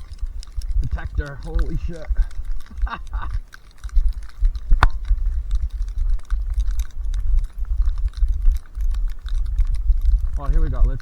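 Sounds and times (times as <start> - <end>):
rapid crackling clicks: 0.0 - 11.0
wind buffeting microphone: 0.0 - 11.0.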